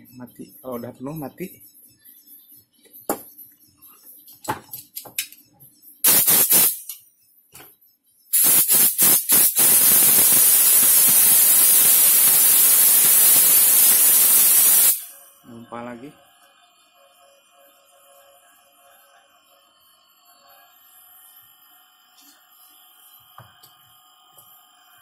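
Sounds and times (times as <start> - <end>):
compressed air hissing out: 6.0 - 6.9, 8.3 - 15.1.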